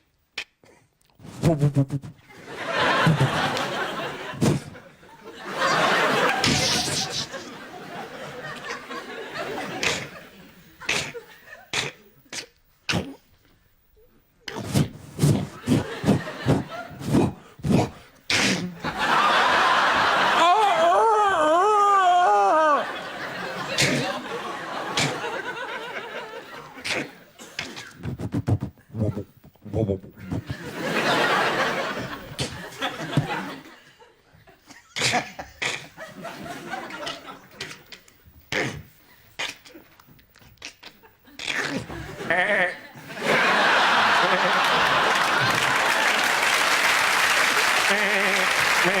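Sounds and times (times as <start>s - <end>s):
man making mouth noises: 0.3s - 2.3s, 6.4s - 7.5s, 9.8s - 10.2s, 10.8s - 19.0s, 23.7s - 24.2s, 25.0s - 25.2s, 26.8s - 30.6s, 32.4s - 32.6s, 34.9s - 36.0s, 37.6s - 42.7s, 47.9s - 49.0s
audience chuckling: 1.5s - 12.0s, 15.2s - 21.0s, 22.6s - 28.5s, 30.2s - 38.2s, 40.6s - 49.0s.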